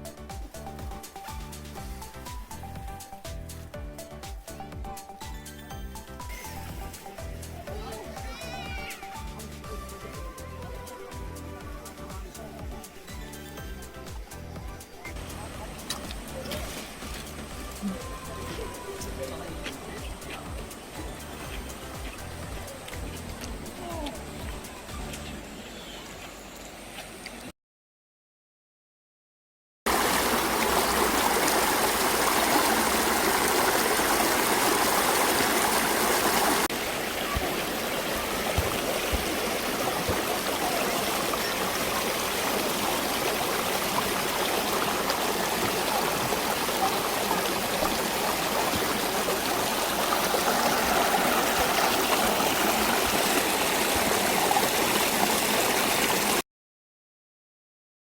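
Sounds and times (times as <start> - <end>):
stream rushing over rocks: 29.9 - 56.4.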